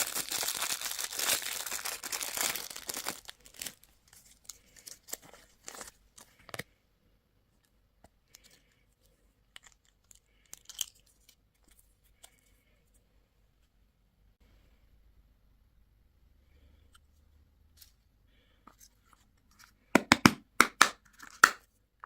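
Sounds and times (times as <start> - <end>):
candy wrapper crinkling: 0.0 - 6.6, 9.5 - 12.4.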